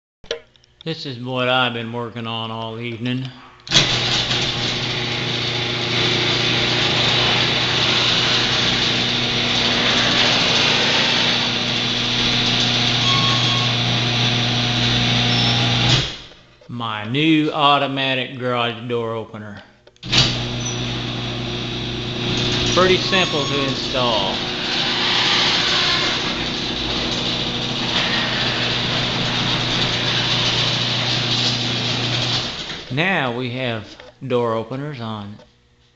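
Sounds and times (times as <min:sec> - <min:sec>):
garage door opener motor humming: 0:03.7 - 0:16.4, 0:20.0 - 0:33.0.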